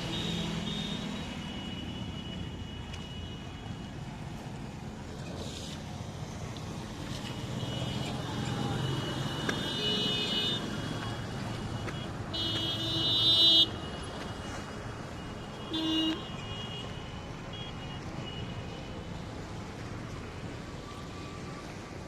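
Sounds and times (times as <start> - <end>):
traffic hum: 0.0 - 22.0
vehicle horns honking: 7.4 - 14.0, 15.4 - 18.6.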